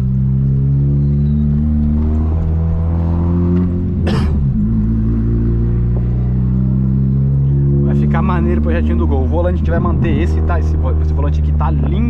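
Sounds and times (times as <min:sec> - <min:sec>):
car engine running on road: 0:00.0 - 0:12.0.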